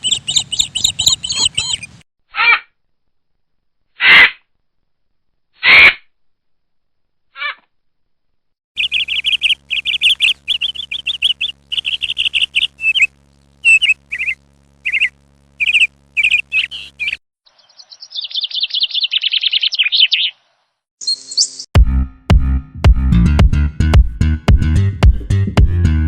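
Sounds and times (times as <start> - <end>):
small birds chirping: 0.0 - 2.0, 8.8 - 21.7
steady low hum: 8.8 - 17.2.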